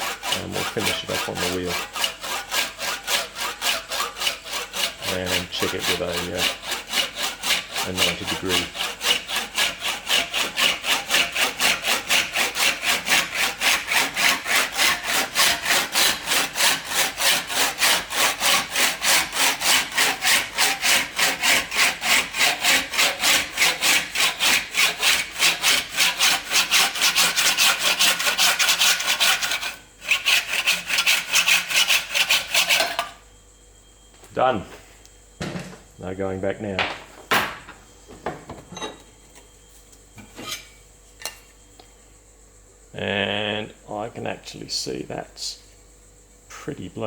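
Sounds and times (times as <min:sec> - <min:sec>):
saw cutting through plastic tube: 0:00.0 - 0:33.1.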